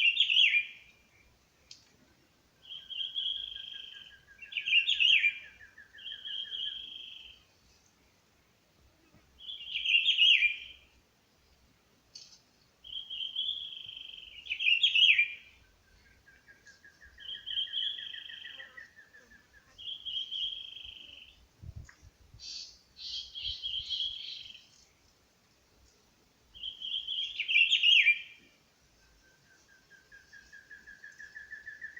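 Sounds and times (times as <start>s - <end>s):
birds singing: 0.0s - 1.8s, 2.6s - 7.4s, 9.4s - 10.8s, 12.8s - 21.4s, 22.4s - 24.8s, 26.6s - 31.9s.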